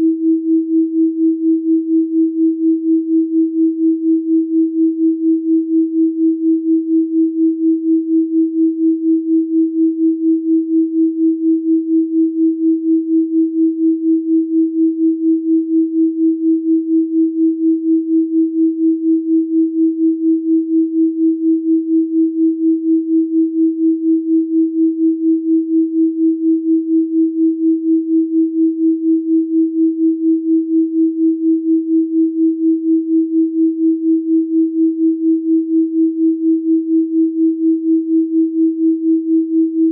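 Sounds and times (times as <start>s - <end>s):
pulsing electronic pure tone: 0.0s - 39.9s.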